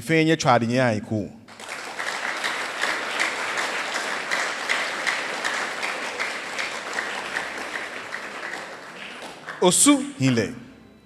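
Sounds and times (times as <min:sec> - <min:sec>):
audience applauding: 0:01.5 - 0:10.3.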